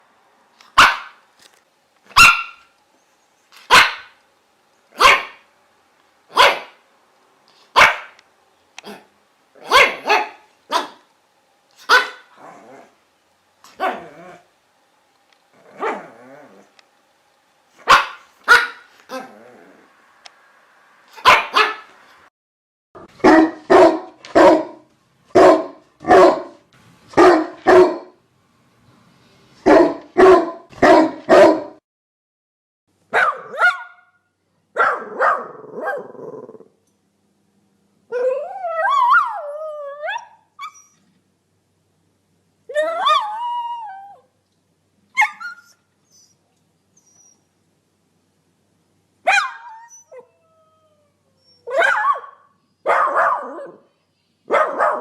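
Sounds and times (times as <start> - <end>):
dog barking: 0.8 - 1.2, 2.1 - 2.7, 3.6 - 4.2, 5.0 - 5.5, 6.3 - 6.8, 7.7 - 8.2, 8.8 - 11.1, 11.8 - 12.4, 13.8 - 14.1, 17.8 - 19.3, 21.1 - 22.0, 23.1 - 26.6, 27.2 - 28.2, 29.6 - 31.8, 33.1 - 36.2, 49.2 - 49.9, 51.7 - 53.9, 54.5 - 55.0.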